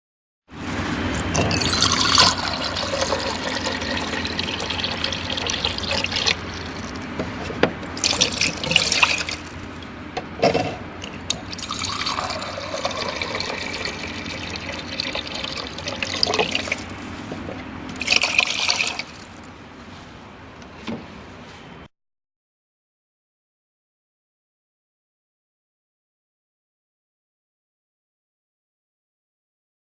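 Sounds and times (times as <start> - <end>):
water pouring into a container: 1.2 - 7.1, 7.9 - 9.8, 11.3 - 17.0, 17.9 - 19.5
short spurts of water: 1.2 - 7.2, 7.8 - 9.9, 11.3 - 17.2, 17.9 - 19.5.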